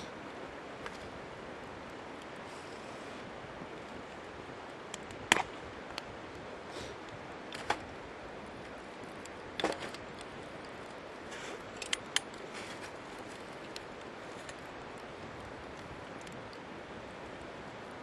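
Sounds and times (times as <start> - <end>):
stream flowing: 0.0 - 18.0
wood snapping and cracking: 4.8 - 6.1, 8.5 - 16.6.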